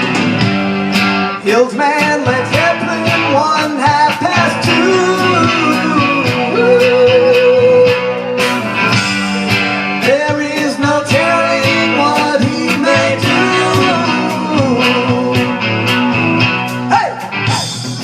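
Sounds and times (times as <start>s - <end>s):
drums keeping steady beat: 0.0s - 18.0s
guitar: 0.0s - 18.0s
person singing: 1.4s - 8.9s, 10.0s - 16.2s.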